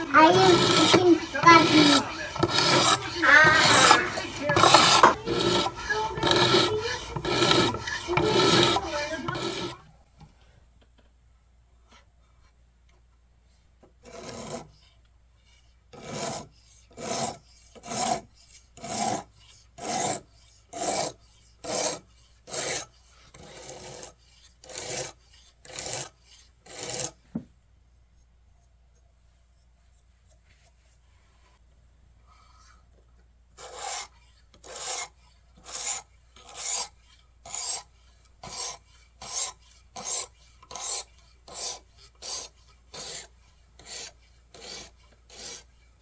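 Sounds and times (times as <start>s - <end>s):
knife rasping on sharpening plate: 0.0s - 9.8s, 33.6s - 45.6s.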